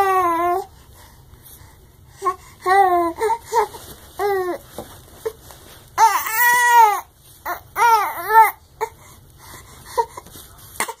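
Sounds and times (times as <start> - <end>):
baby crying and whimpering: 0.0 - 0.7, 2.2 - 5.4, 6.0 - 9.0.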